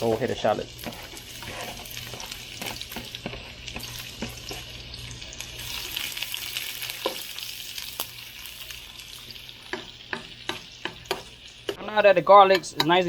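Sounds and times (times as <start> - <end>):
garlic sizzling in hot oil: 0.0 - 13.0
spatula knocking against pan: 9.7 - 11.3.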